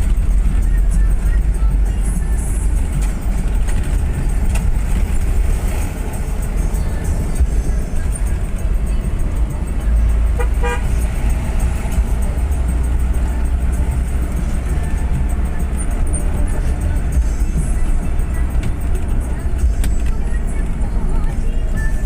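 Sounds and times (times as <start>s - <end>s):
bus rumbling on road: 0.0s - 22.0s
bus horn toot: 10.2s - 11.6s.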